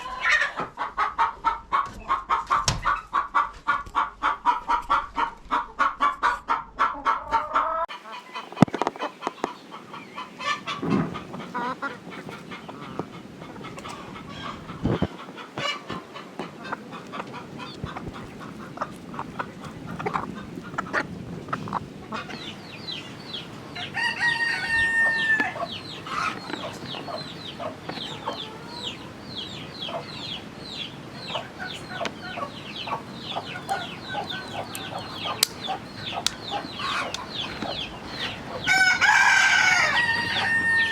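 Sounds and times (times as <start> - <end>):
chickens clucking: 0.0 - 40.9
rooster crowing: 23.8 - 25.7, 38.2 - 40.9.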